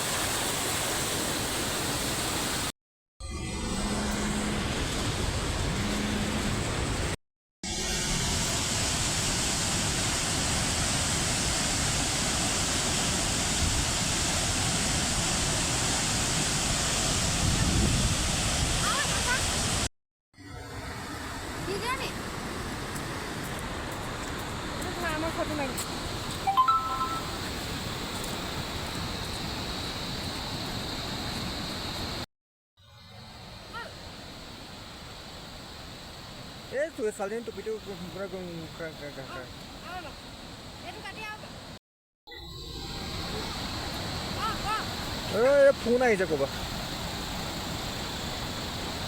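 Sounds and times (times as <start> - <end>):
waterfall rushing: 7.8 - 19.9, 26.3 - 28.2, 43.0 - 49.0.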